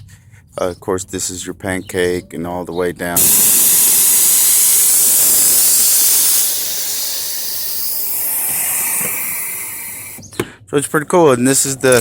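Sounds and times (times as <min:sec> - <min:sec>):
air suspension hissing: 0:03.2 - 0:10.3.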